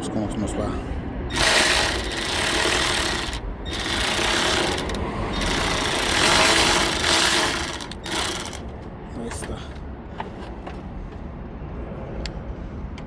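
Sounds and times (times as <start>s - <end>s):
power wrench running: 1.3s - 8.7s.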